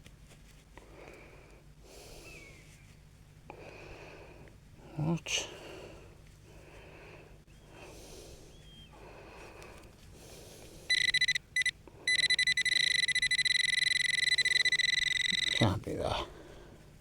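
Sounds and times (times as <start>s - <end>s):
metal detector buzzing tone: 10.9s - 15.7s.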